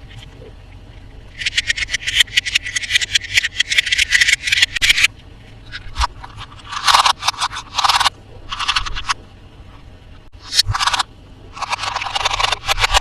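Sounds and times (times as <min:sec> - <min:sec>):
toy packaging scraping and crinkling: 0:05.7 - 0:09.2, 0:10.4 - 0:13.0.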